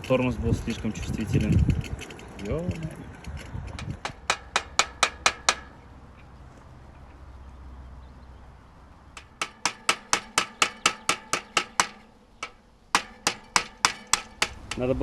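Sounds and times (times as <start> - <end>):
rapid ringing hammer strikes: 4.0 - 5.7, 9.2 - 15.0.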